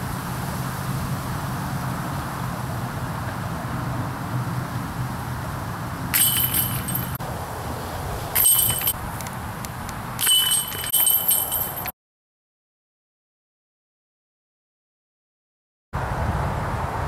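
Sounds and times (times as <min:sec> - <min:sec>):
basket chains jingling: 0:06.1 - 0:07.2, 0:08.4 - 0:09.0, 0:10.2 - 0:11.9.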